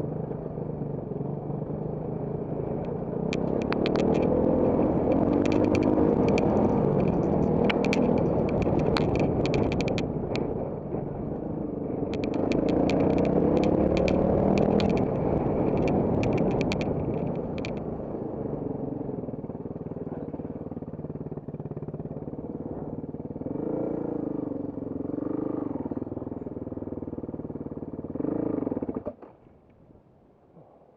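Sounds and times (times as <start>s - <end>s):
motorcycle engine revving: 0.0s - 29.2s
clicks and clatter: 2.8s - 11.0s, 12.1s - 17.9s.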